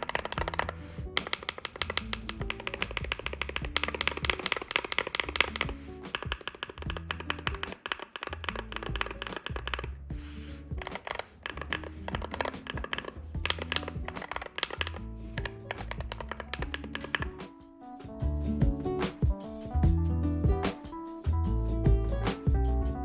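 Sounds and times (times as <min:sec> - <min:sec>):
keyboard keystroke clacks: 0:00.0 - 0:17.5.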